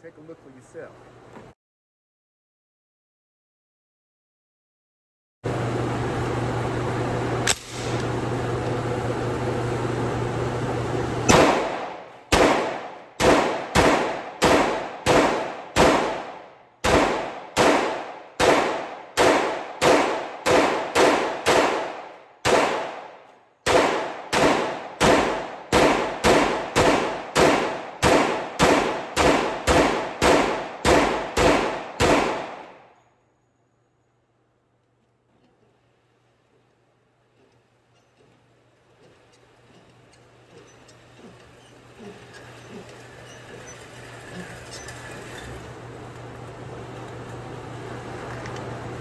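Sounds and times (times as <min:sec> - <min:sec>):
steady hiss with low hum: 0:05.5 - 0:32.8, 0:33.6 - 0:49.0
gunshots with ringing tail: 0:11.3 - 0:32.9.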